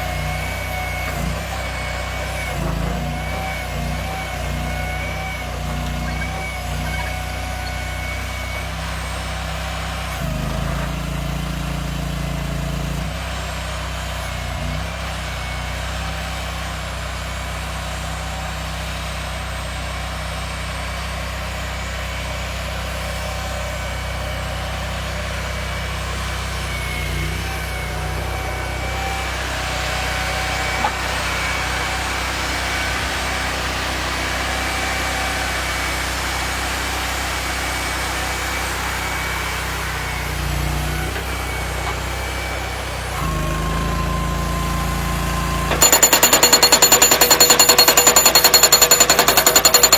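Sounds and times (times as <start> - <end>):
machine engine running: 38.3 - 49.9.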